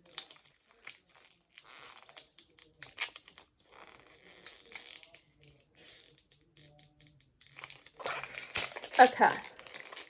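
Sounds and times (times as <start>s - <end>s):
packaging tearing and crinkling: 7.5s - 10.0s.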